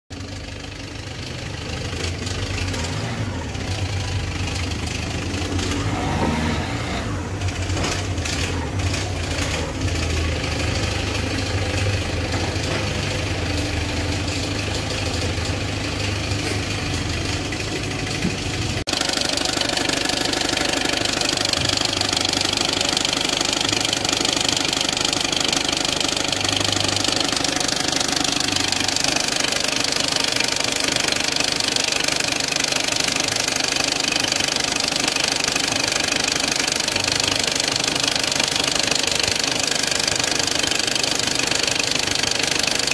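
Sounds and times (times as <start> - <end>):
diesel engine idling: 0.1 - 42.9
knocking rattle from engine pulley: 11.3 - 42.9.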